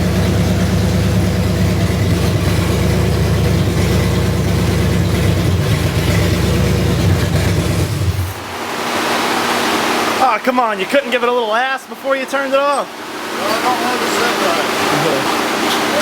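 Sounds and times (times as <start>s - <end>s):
vvee eight engine running on open headers: 0.0s - 10.2s.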